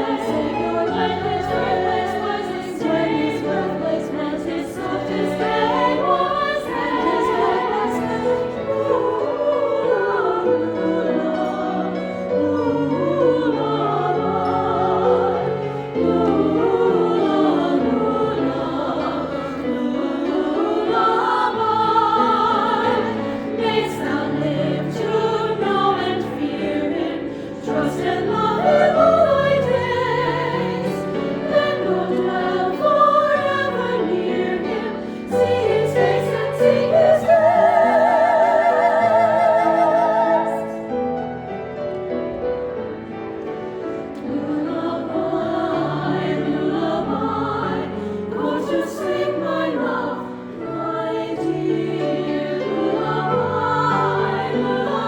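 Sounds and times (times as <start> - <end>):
choir singing: 0.0 - 55.0.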